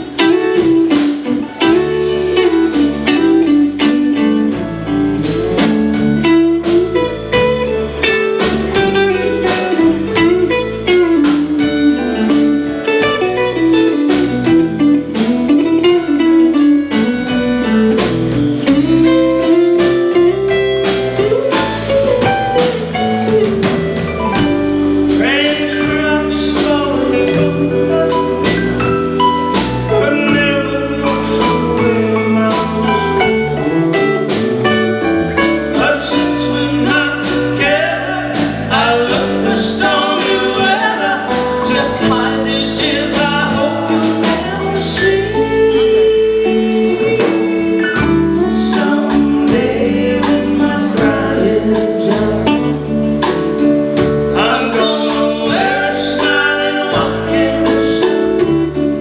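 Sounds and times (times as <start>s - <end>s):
drums steady beat: 0.0s - 59.0s
live band playing: 0.0s - 59.0s
person singing: 24.2s - 59.0s.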